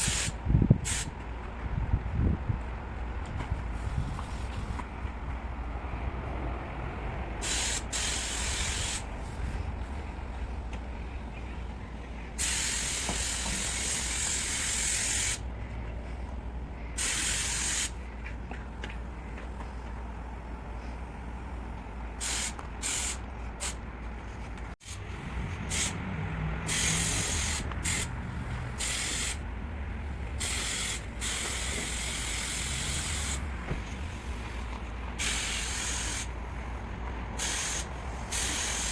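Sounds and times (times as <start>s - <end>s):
spray gun hissing: 7.4s - 9.1s, 12.4s - 15.4s, 17.0s - 18.0s, 22.2s - 23.8s, 24.8s - 26.0s, 26.7s - 28.1s, 28.7s - 29.4s, 30.4s - 33.4s, 35.2s - 36.4s, 37.4s - 38.9s.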